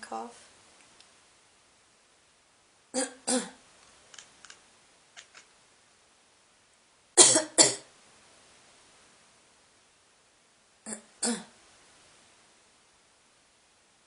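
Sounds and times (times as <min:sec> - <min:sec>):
person coughing: 0:03.0 - 0:03.6, 0:07.2 - 0:07.9, 0:10.9 - 0:11.6.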